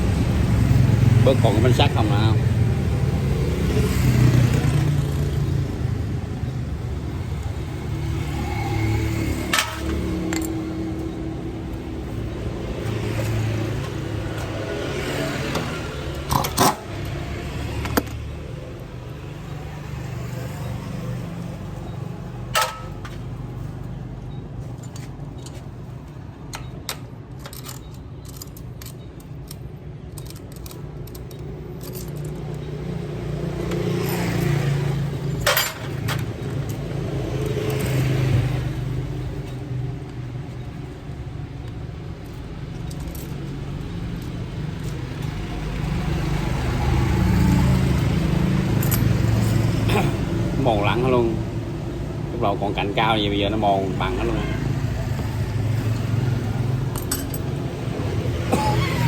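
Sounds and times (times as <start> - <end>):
metal tools clinking and knocking: 9.4 - 14.6, 15.5 - 17.2, 21.7 - 45.4, 48.7 - 50.2, 55.6 - 59.0.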